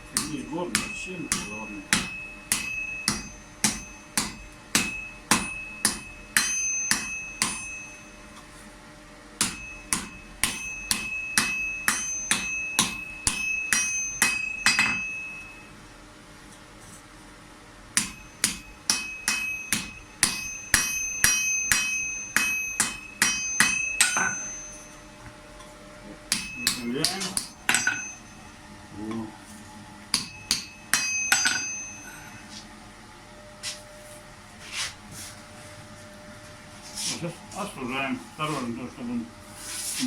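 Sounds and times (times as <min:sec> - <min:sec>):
hammer striking steel on anvil: 0:00.0 - 0:08.5, 0:09.4 - 0:15.7, 0:17.9 - 0:25.7, 0:26.3 - 0:28.5, 0:30.1 - 0:32.5.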